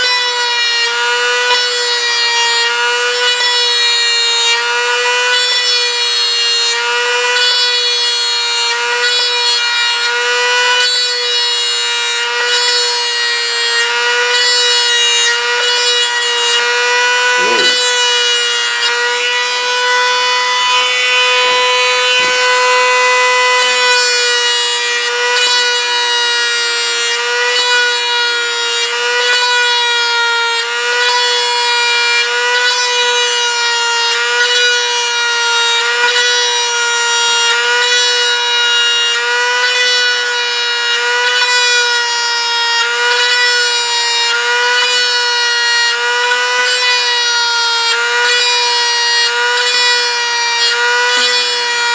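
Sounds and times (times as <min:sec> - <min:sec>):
rotary tool whining: 0:17.2 - 0:18.7
light rubbing on metal: 0:17.4 - 0:18.5.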